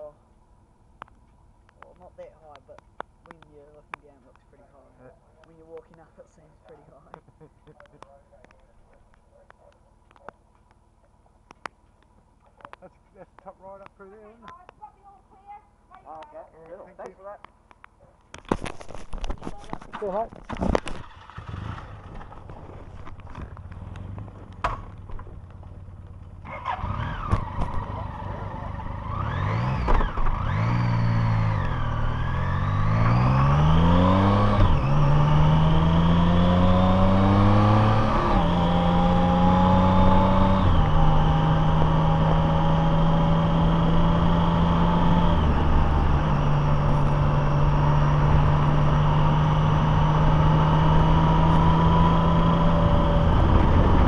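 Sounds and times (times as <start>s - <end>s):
vehicle engine accelerating: 19.5s - 54.0s.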